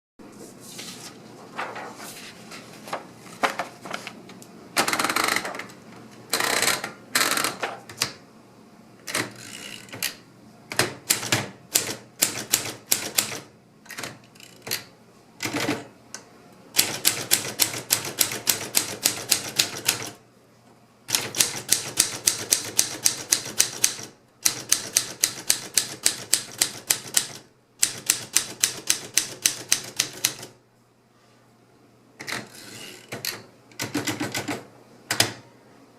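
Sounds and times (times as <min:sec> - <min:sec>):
manual typewriter typing: 0:09.1 - 0:15.9, 0:16.7 - 0:20.2, 0:21.1 - 0:30.6, 0:32.2 - 0:35.4.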